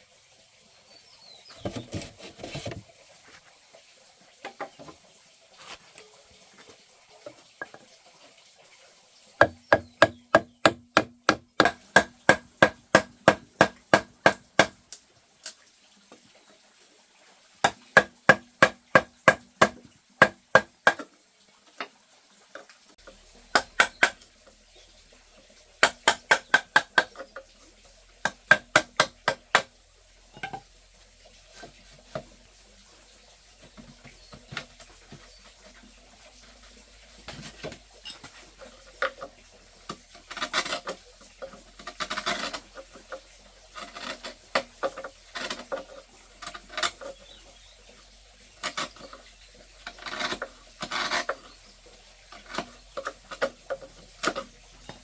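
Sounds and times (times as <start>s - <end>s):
rapid strikes on bamboo: 9.4s - 14.9s, 17.6s - 21.1s, 23.5s - 24.2s, 25.8s - 27.3s, 28.2s - 29.7s.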